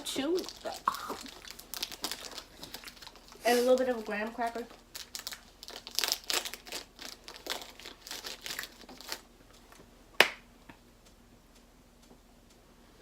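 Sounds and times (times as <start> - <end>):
snack wrapper crinkling: 0.0 - 9.3.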